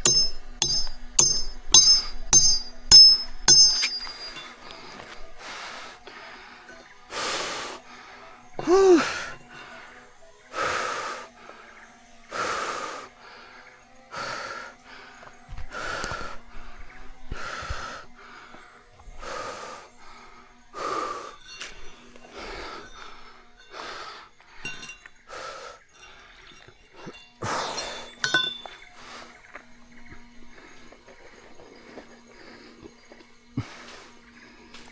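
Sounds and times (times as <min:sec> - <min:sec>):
person breathing hard: 0:04.8 - 0:16.7, 0:17.3 - 0:21.4, 0:25.3 - 0:26.6, 0:33.6 - 0:34.2.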